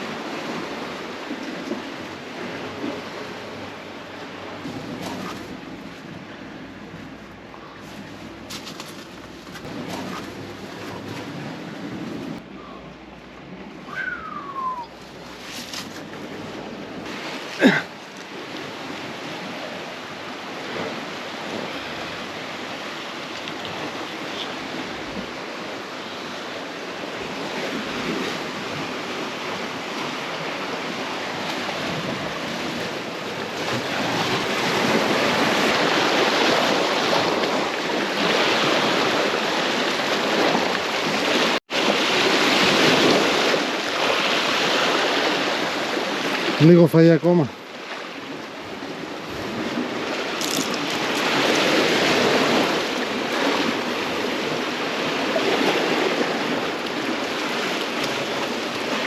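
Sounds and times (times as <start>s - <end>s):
sea waves washing against rocks: 0.0s - 12.5s, 13.3s - 59.0s
wind on microphone: 4.6s - 17.1s, 48.3s - 59.0s.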